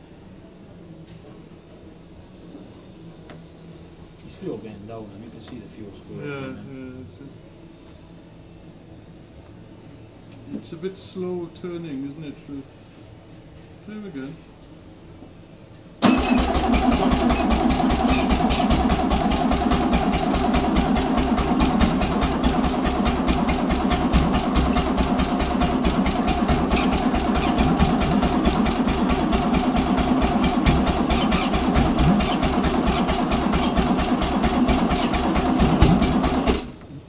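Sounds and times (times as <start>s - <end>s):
engine cranking slowly: 16.0s - 36.7s
petrol engine running: 16.0s - 36.8s.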